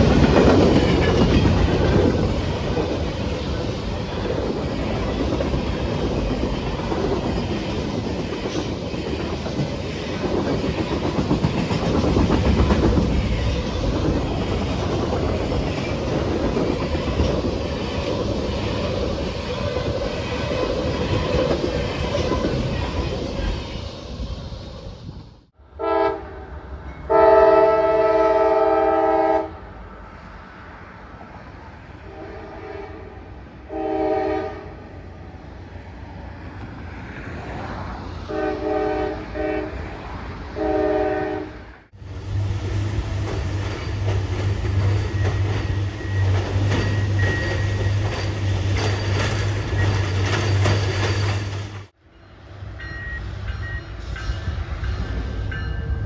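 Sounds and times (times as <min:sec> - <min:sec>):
wheel and rail noise: 0:00.0 - 0:25.5, 0:34.6 - 0:56.0
train passing: 0:00.0 - 0:56.0
locomotive horn blasts: 0:25.8 - 0:29.6, 0:32.1 - 0:34.8, 0:38.3 - 0:39.8, 0:40.6 - 0:41.7.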